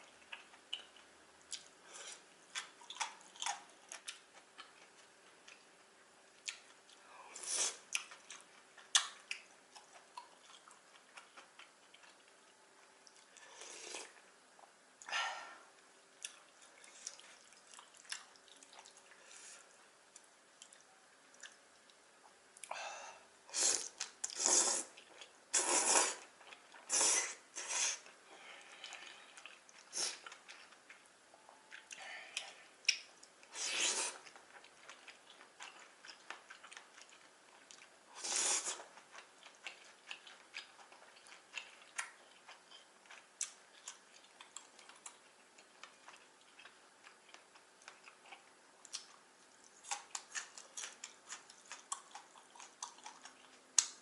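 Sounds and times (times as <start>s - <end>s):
chewing with wet mouth clicks: 0.0s - 1.8s, 2.5s - 5.7s, 6.4s - 7.0s, 7.8s - 14.8s, 16.2s - 19.3s, 20.1s - 22.7s, 25.0s - 26.9s, 28.0s - 38.0s, 38.6s - 54.0s
noodle slurping: 23.6s - 26.3s.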